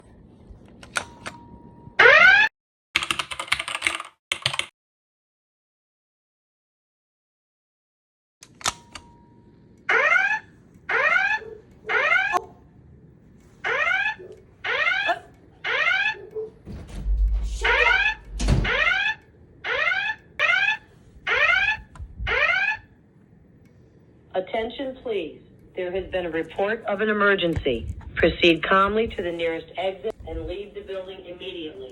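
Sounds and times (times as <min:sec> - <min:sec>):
fire alarm whoop tones: 0:02.0 - 0:02.5, 0:09.9 - 0:12.4, 0:13.7 - 0:16.3, 0:17.0 - 0:22.9
rapid keyboard-like clicking: 0:03.0 - 0:04.7
upward sweeping tone: 0:17.0 - 0:19.0.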